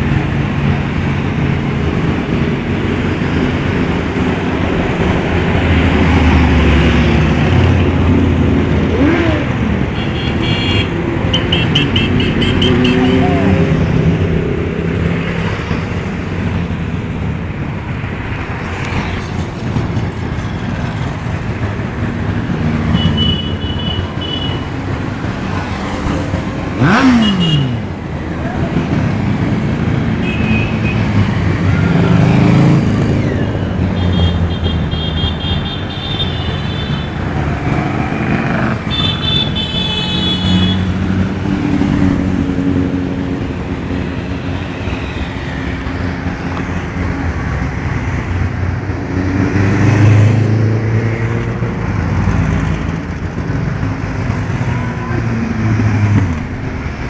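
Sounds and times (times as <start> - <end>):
road traffic: 0.0 - 57.0
vehicle passing close: 24.6 - 34.9.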